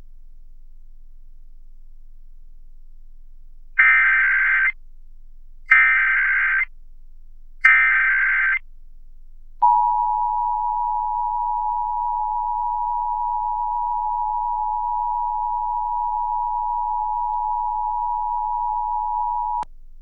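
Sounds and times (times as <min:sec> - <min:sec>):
data burst: 0:03.8 - 0:04.7, 0:05.7 - 0:06.6, 0:07.6 - 0:08.6.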